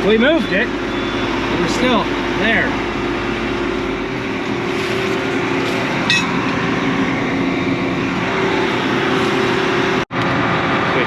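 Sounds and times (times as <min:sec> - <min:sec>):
farm machine engine running: 0:00.0 - 0:11.0
sharp metallic clink: 0:06.1 - 0:06.5.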